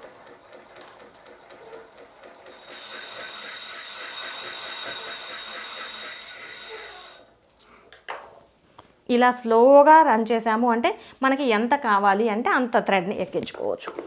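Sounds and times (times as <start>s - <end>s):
sewing machine bobbin winder whirring: 0.0s - 7.3s.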